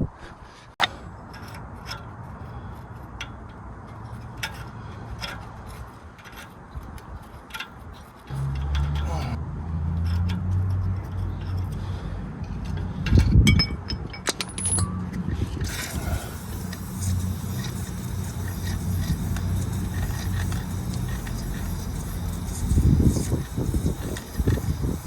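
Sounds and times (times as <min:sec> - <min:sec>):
tools clinking on metal: 0:13.4 - 0:15.2.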